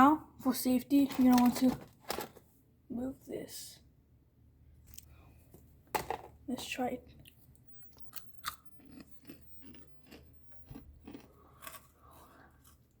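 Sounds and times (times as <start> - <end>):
person chewing crunchy food: 8.0 - 13.0.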